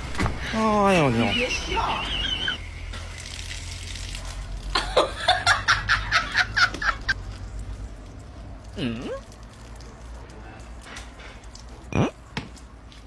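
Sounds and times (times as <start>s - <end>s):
person laughing: 4.8s - 7.2s.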